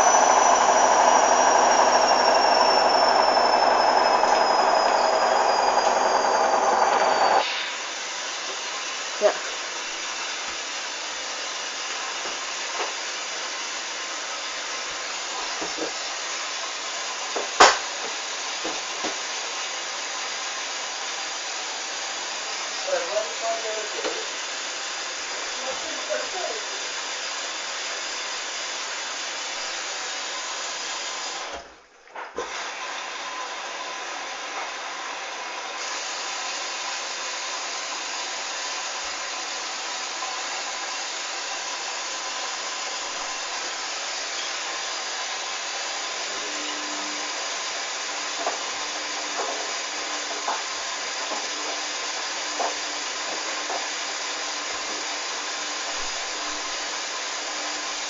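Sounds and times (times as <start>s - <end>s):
washing machine rushing noise: 0.0s - 7.8s.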